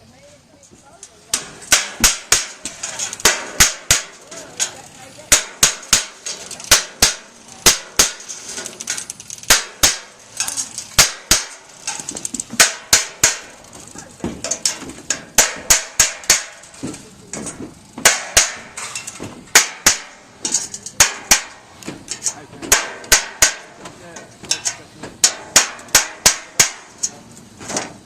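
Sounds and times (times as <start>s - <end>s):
hammer striking metal: 1.3s - 4.2s, 5.3s - 8.3s, 9.5s - 11.6s, 12.6s - 13.6s, 14.4s - 16.9s, 18.0s - 21.6s, 22.7s - 23.8s, 24.5s - 27.0s.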